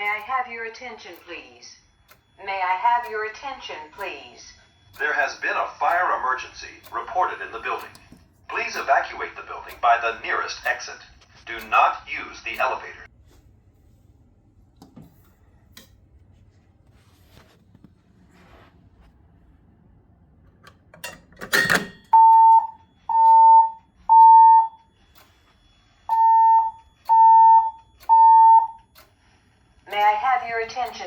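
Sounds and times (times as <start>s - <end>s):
fire alarm beeps: 0.0s - 13.1s, 21.4s - 31.0s.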